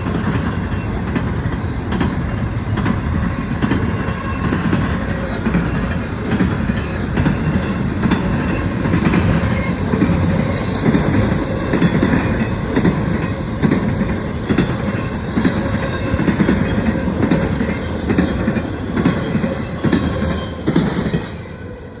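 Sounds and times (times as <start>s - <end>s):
wheels clacking over rail joints: 0.0s - 21.3s
freight train rumbling past: 0.0s - 22.0s
high wheel squeal: 6.9s - 11.7s.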